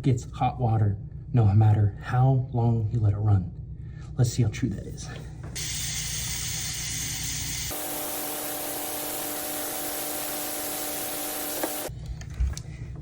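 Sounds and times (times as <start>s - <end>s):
faucet water running into sink: 5.6s - 7.8s.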